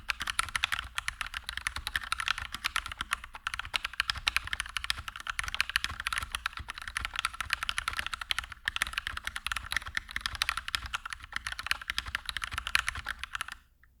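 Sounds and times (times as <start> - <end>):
fast mechanical keyboard typing: 0.0 - 13.6.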